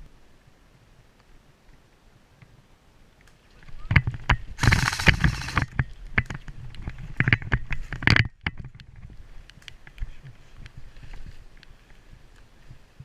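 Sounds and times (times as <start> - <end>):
footsteps through undergrowth: 10.0 - 12.7.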